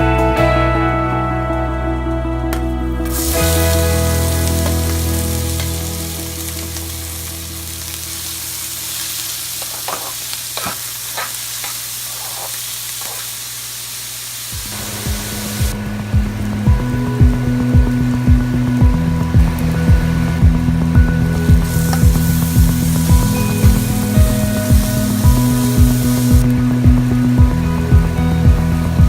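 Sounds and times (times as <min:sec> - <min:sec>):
food sizzling in oil: 0:03.1 - 0:15.8, 0:21.2 - 0:26.8
spatula scraping a pan: 0:09.6 - 0:13.4.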